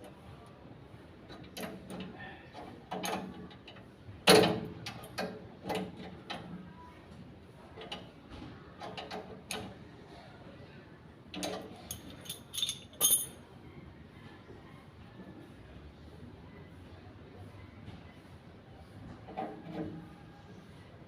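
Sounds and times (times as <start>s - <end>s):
tools clicking and knocking: 11.3s - 13.4s.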